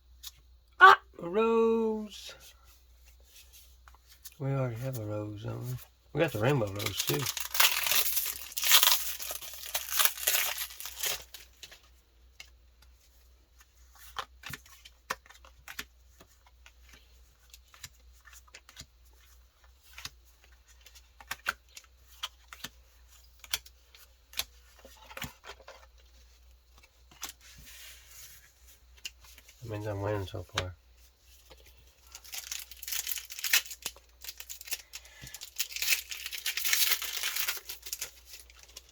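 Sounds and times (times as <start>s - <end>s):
foil wrapper crinkling and tearing: 6.4s - 11.6s, 32.0s - 38.9s
trading cards clicking and snapping: 14.1s - 17.0s, 17.6s - 18.9s, 19.8s - 20.2s, 20.8s - 25.4s.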